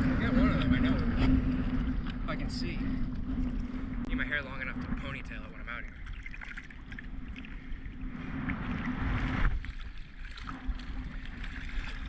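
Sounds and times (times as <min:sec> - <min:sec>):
rush of water: 0:00.0 - 0:12.0
steady rumble: 0:00.0 - 0:12.0
water sloshing around surfboard: 0:05.8 - 0:12.0.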